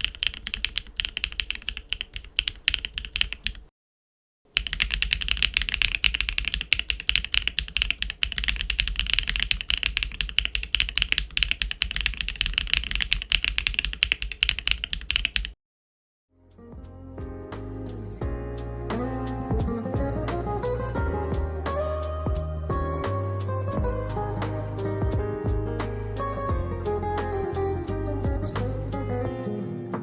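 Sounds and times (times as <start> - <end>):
mechanical keyboard typing: 0.0 - 3.7, 4.5 - 15.6.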